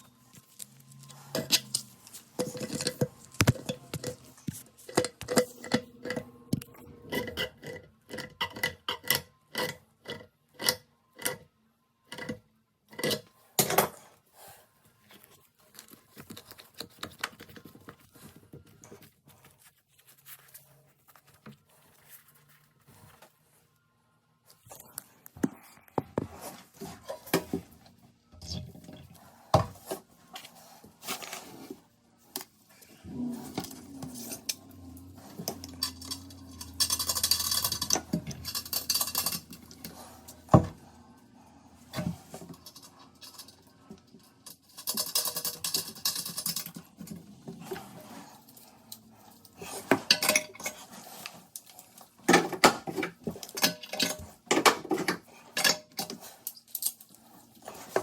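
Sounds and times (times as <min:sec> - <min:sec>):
metal tools clinking: 0:35.3 - 0:40.0.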